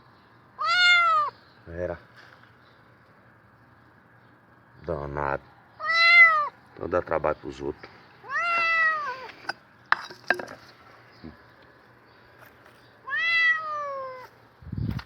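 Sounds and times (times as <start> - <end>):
cat meowing: 0.6 - 1.4, 5.8 - 6.6, 8.2 - 9.3, 13.0 - 14.3.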